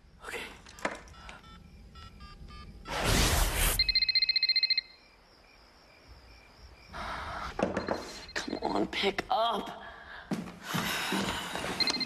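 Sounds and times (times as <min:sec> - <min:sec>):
electronic phone ring warbling: 0:03.7 - 0:05.0
phone keypad beeping: 0:03.8 - 0:04.9.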